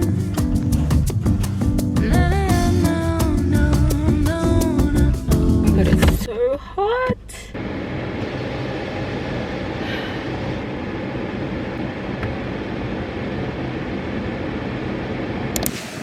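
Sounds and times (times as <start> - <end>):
moving train rumble: 0.0 - 6.2.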